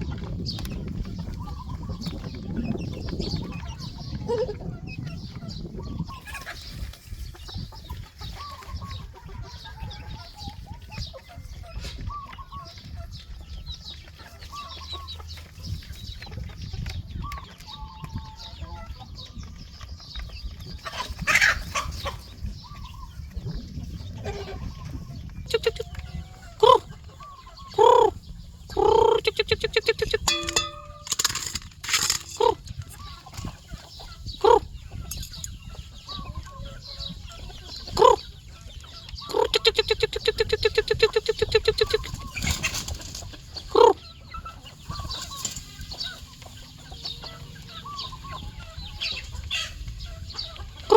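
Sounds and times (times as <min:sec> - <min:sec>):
chickens clucking: 0:00.0 - 0:50.9
chicken squawks: 0:24.2 - 0:30.9, 0:39.2 - 0:42.8.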